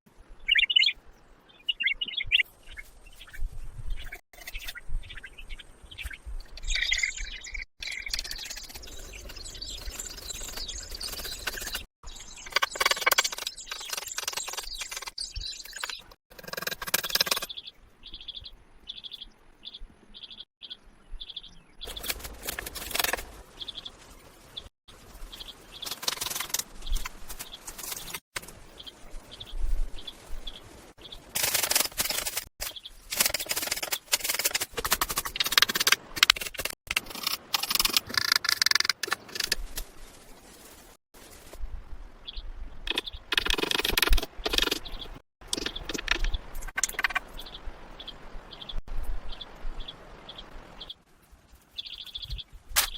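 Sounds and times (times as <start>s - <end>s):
bird chirps: 0.4s - 22.2s, 42.2s - 51.0s, 51.7s - 52.9s.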